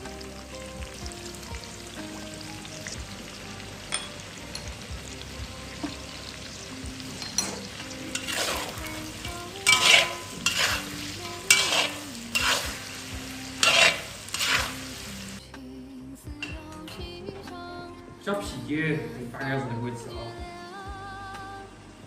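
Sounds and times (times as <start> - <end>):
food sizzling in a pan: 0.0 - 15.4
spatula scraping stirring strokes: 5.7 - 15.4.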